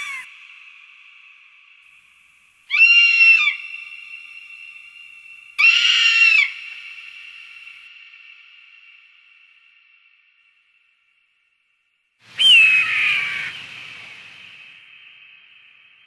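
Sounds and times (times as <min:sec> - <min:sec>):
falcon screaming calls: 0:00.0 - 0:00.3, 0:02.7 - 0:04.3, 0:05.6 - 0:06.7, 0:12.3 - 0:13.7.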